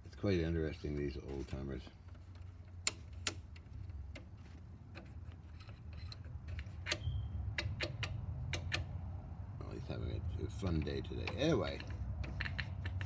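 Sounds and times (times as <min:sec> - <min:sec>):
sharp metallic clicks: 0:02.4 - 0:04.3, 0:04.9 - 0:09.0, 0:10.7 - 0:13.0.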